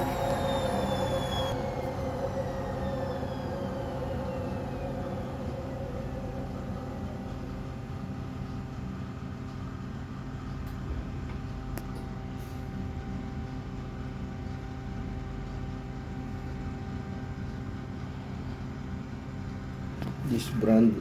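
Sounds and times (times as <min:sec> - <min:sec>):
washing machine motor humming: 0:00.0 - 0:09.4.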